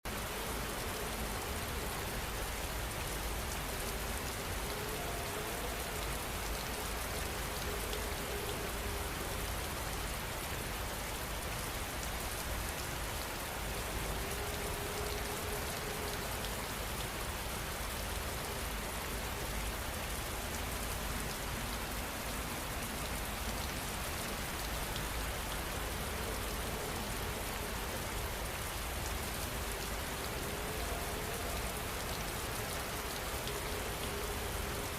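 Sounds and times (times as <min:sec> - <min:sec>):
steady rain patter: 0:00.0 - 0:34.9.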